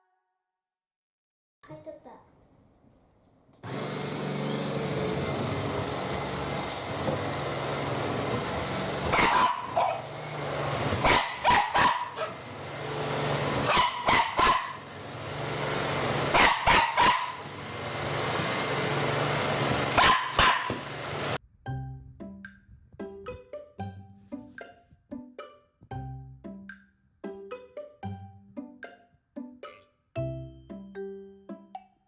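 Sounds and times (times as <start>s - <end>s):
vacuum cleaner motor humming: 3.6s - 21.4s
dog barking: 9.0s - 10.2s, 11.0s - 12.4s, 13.6s - 14.8s, 16.3s - 17.4s, 20.0s - 20.9s.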